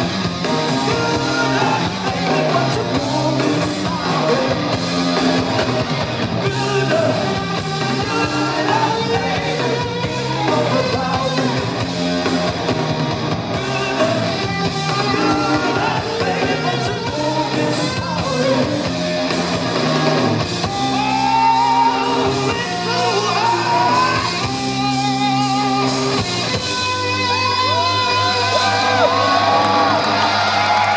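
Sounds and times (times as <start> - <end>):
bass guitar: 0.0 - 30.9
drums: 0.0 - 30.9
electric guitar: 0.0 - 30.9
wordless wailing vocals: 0.7 - 4.7, 6.4 - 11.7, 13.6 - 18.8, 20.8 - 24.5.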